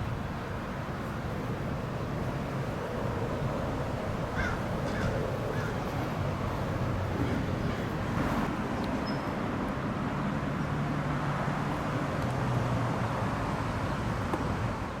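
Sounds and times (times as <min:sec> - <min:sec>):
passing vehicle engine hum: 0:00.0 - 0:15.0
road traffic noise: 0:00.0 - 0:15.0.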